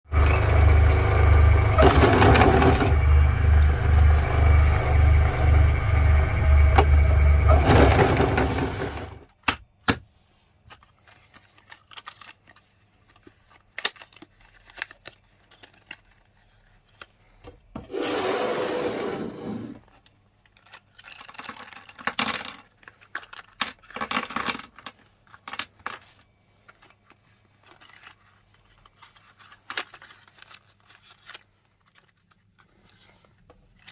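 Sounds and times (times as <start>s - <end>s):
meat grinder motor hum: 0.1s - 9.2s
short scraping: 17.9s - 19.8s.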